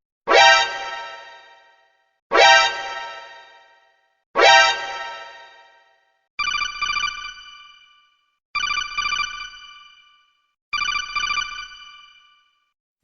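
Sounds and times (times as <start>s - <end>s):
electronic telephone ringtone: 8.6s - 9.6s, 10.8s - 12.6s.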